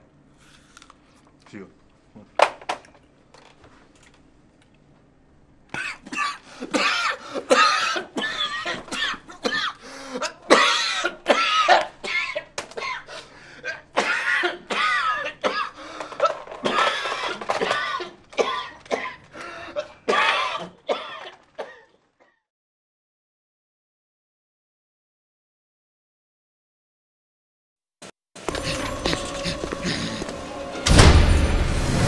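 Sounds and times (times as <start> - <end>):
man coughing harshly: 5.7 - 22.4.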